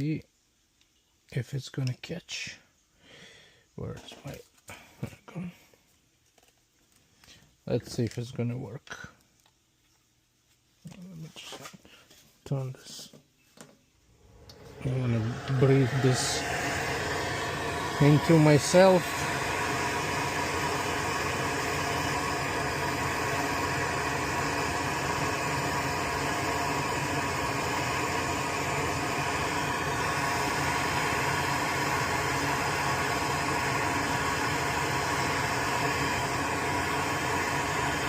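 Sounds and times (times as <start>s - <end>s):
electric fan whirring: 14.0s - 38.0s.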